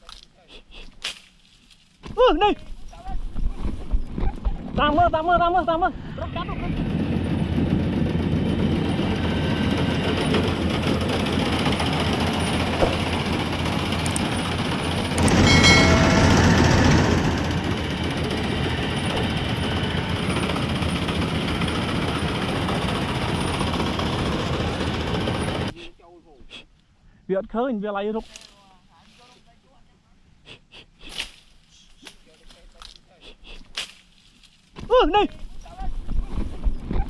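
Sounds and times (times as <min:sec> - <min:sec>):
combine harvester rumbling: 0:04.6 - 0:25.8.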